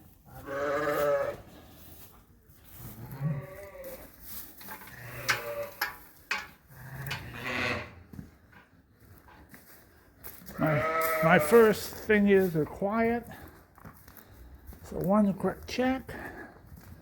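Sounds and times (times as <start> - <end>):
sheep bleating: 0.3 - 1.4, 6.8 - 7.9, 10.5 - 11.8.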